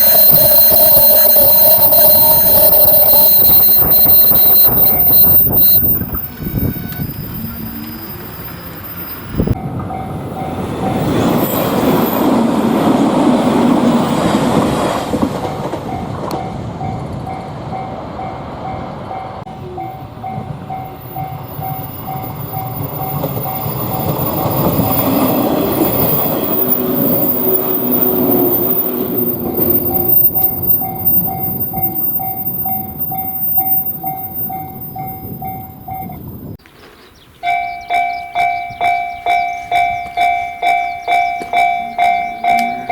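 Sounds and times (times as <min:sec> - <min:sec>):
level crossing bell ringing: 0:00.0 - 0:06.1, 0:37.4 - 0:42.9
electric train rumbling past: 0:00.0 - 0:42.9.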